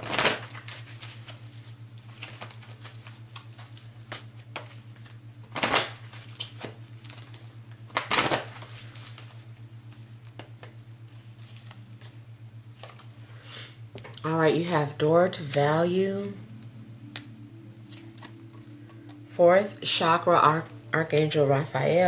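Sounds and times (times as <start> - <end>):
cards being shuffled: 0.0 - 13.2, 17.1 - 18.7
steady low hum: 0.0 - 22.0.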